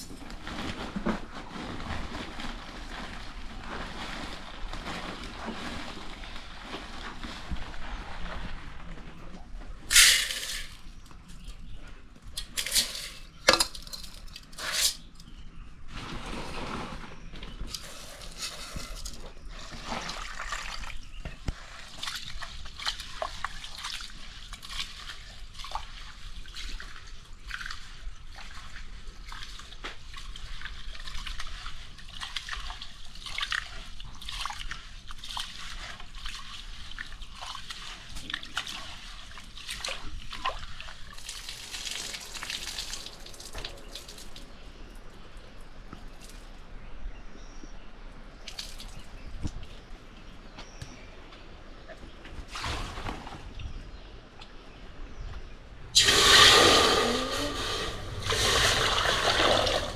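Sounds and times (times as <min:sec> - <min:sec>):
water sloshing and dripping: 0:17.6 - 0:45.2, 0:55.9 - 0:59.9
small splashes: 0:56.0 - 0:59.9.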